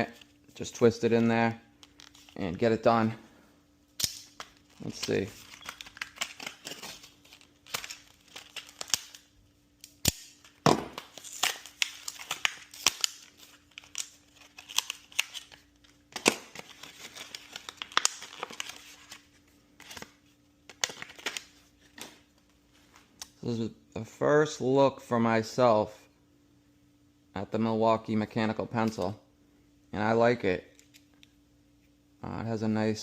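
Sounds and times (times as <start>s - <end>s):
plastic packaging snapping: 4.0s - 19.2s
packaging crinkling and tearing: 4.0s - 22.2s.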